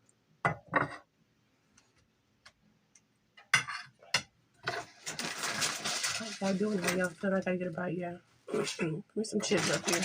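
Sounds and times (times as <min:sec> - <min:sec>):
crinkly rustling: 0:04.6 - 0:10.0.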